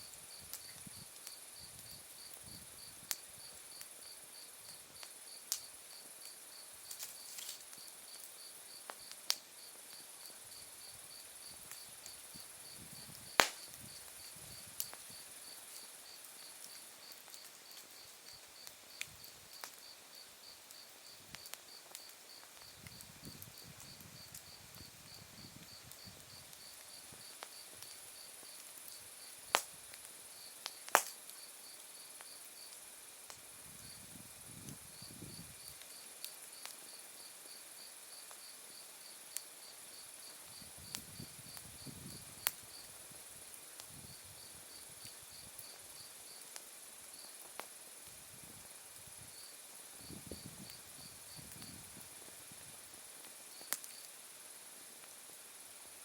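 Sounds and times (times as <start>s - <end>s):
continuous high insect trill: 0.0s - 56.0s
firewood crackling and popping: 0.1s - 37.6s, 39.3s - 56.0s
insects chirping: 0.3s - 29.4s.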